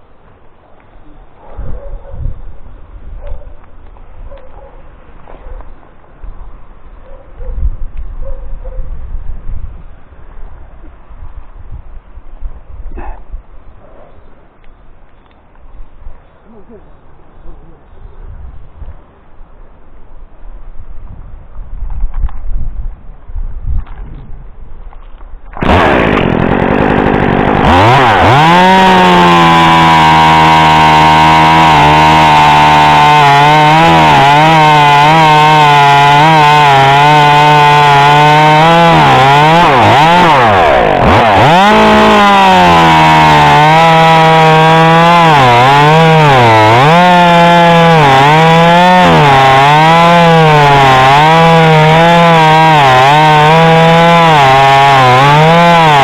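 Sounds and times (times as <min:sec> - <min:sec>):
chainsaw cutting wood: 0:25.5 - 0:56.0.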